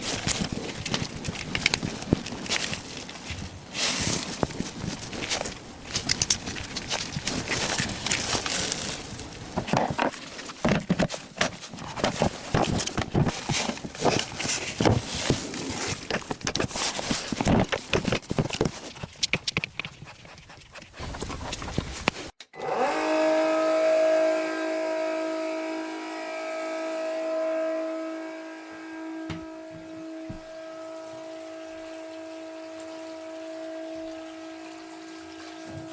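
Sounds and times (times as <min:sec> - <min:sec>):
handling knocks and clatter: 0:00.0 - 0:22.2
pump motor whine: 0:22.5 - 0:35.9.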